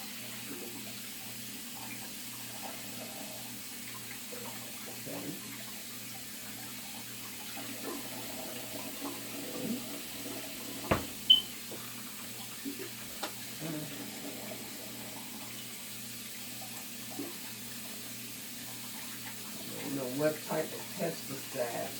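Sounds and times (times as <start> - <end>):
faucet running: 0.0 - 21.9
knocks and clatters against sink: 10.8 - 11.8.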